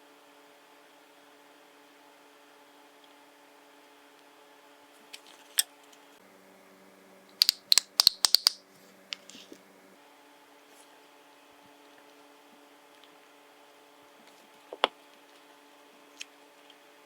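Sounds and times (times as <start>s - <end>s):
small hard objects clicking: 7.4s - 8.6s, 9.2s - 9.6s.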